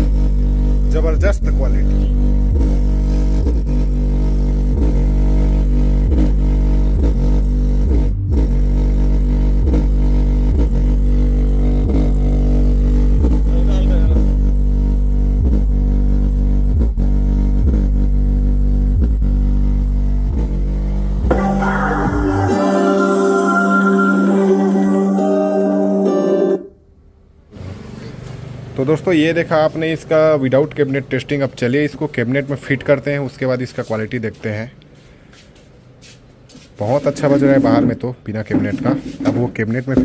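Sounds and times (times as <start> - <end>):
loud bass-heavy dance music: 0.0 - 26.6.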